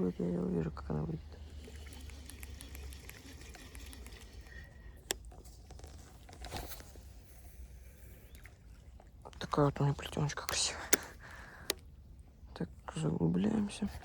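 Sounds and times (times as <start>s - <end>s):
fishing reel ticking: 0.0s - 8.6s.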